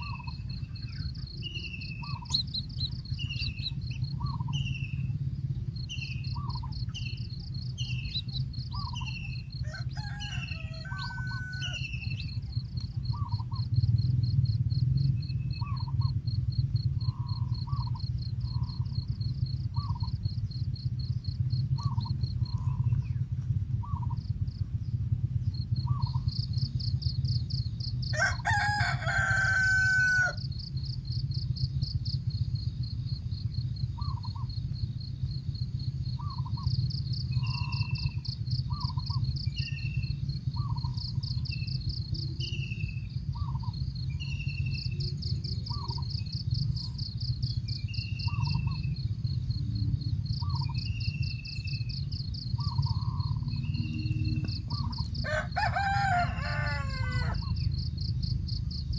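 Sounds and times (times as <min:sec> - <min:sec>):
low steady hum: 0:00.0 - 0:58.9
pulsing insect trill: 0:00.0 - 0:58.9
rooster crowing: 0:09.5 - 0:12.2, 0:28.1 - 0:30.5, 0:54.7 - 0:57.6.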